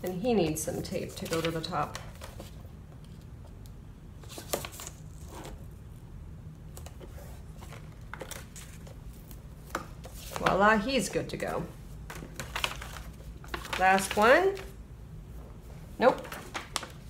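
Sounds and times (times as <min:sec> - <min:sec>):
low steady hum: 0:00.0 - 0:17.0
envelopes being handled: 0:12.0 - 0:14.8, 0:16.1 - 0:17.0.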